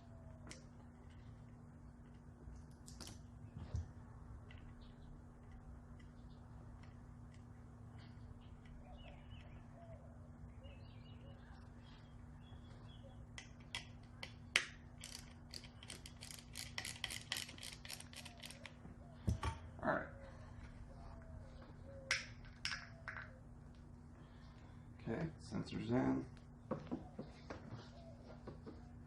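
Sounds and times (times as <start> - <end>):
faint steady hum: 0.0 - 29.0
sharp mechanical clicks: 13.4 - 18.8.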